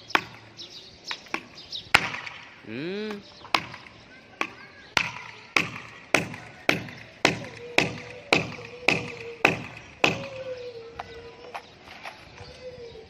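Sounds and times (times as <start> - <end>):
hammer driving nails into wood: 5.0 - 10.4.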